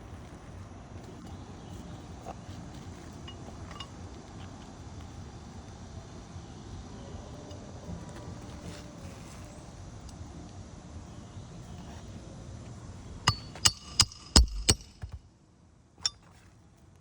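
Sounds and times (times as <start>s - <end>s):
hammer striking metal: 13.3s - 15.2s.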